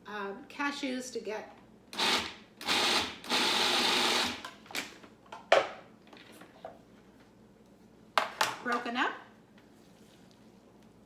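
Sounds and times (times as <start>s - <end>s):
food processor chopping: 2.0s - 4.4s.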